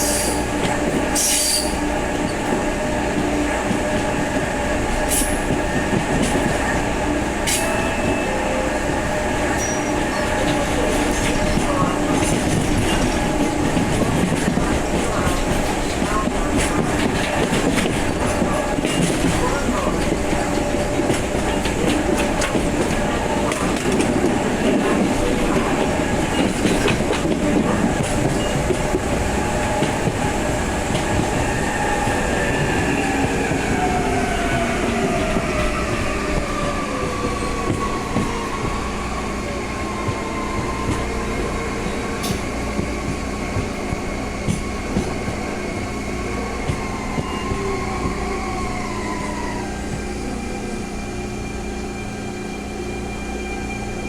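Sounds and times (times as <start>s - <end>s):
wheels clattering on rail: 9.5s - 31.4s.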